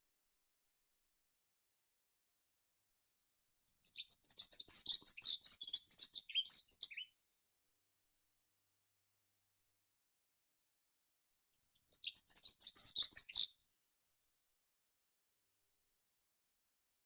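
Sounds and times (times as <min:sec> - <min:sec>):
songbird chirping: 0:03.5 - 0:07.1, 0:11.6 - 0:13.6.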